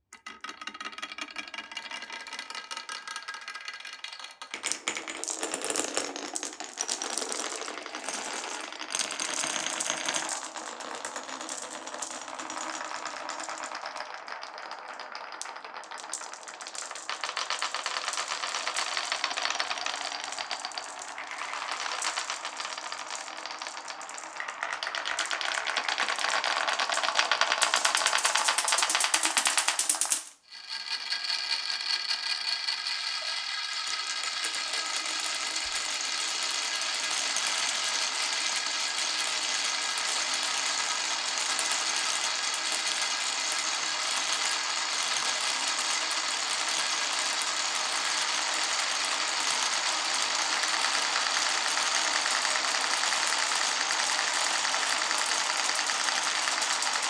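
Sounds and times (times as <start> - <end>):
marbles rolling on a track: 0.1 - 57.0.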